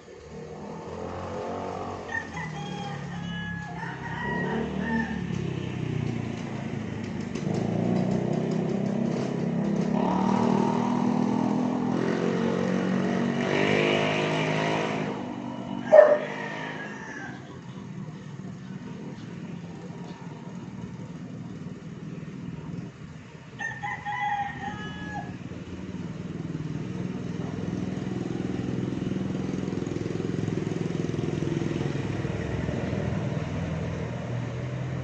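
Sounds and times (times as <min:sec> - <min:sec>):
engine revving: 0:00.1 - 0:03.0, 0:04.3 - 0:17.8, 0:25.6 - 0:35.0
rooster crowing: 0:01.8 - 0:05.5, 0:15.3 - 0:17.9, 0:23.5 - 0:25.5
chickens calling: 0:15.5 - 0:21.4.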